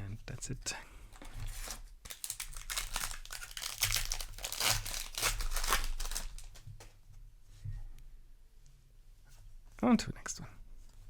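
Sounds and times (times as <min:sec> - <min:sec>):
foil wrapper crinkling and tearing: 0:01.2 - 0:06.7.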